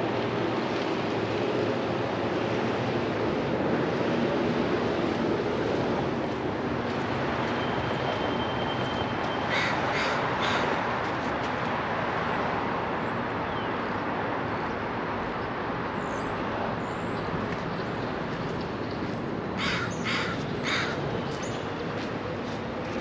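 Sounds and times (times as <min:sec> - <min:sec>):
city traffic rumble: 0:00.0 - 0:23.0
crow cawing: 0:09.5 - 0:10.8, 0:19.6 - 0:21.0.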